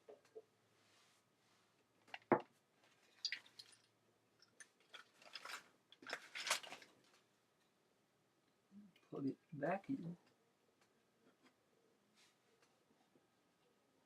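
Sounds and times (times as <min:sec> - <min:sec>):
cables scraping and rustling: 0:02.8 - 0:07.3.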